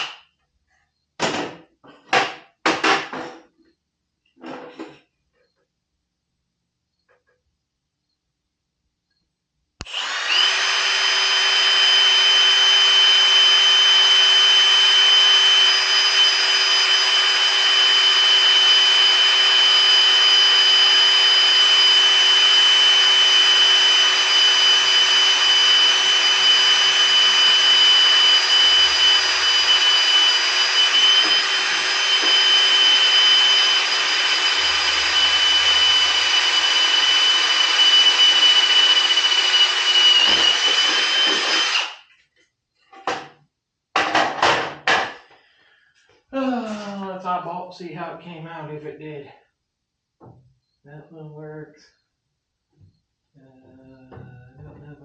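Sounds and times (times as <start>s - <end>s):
electric drill whining: 9.8s - 42.1s.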